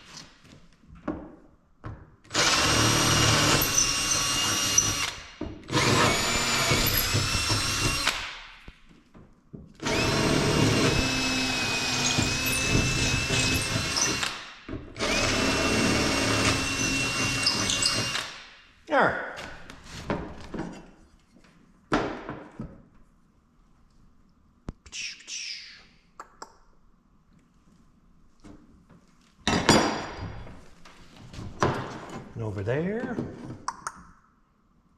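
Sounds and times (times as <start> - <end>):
power drill whining: 2.3 - 8.3, 9.8 - 18.4.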